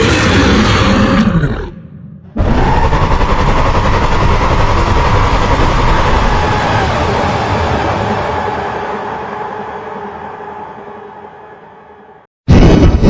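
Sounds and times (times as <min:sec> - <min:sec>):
monster roar: 0:00.0 - 0:08.2
rushing rumble with held tone: 0:02.4 - 0:11.6.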